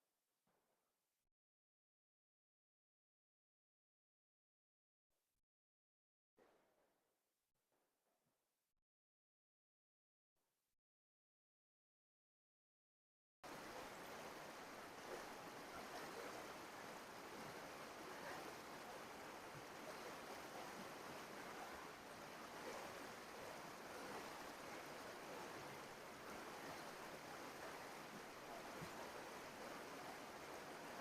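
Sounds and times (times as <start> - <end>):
brook flowing water: 13.4 - 31.0.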